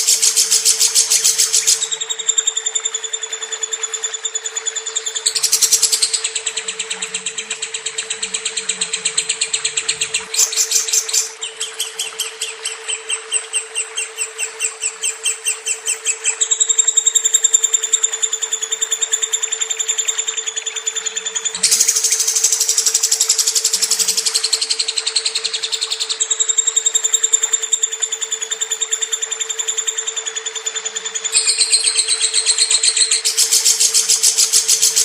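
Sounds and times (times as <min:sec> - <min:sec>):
bird chattering trill: 0:00.0 - 0:03.3, 0:04.2 - 0:35.0
steady low hum: 0:04.8 - 0:26.0.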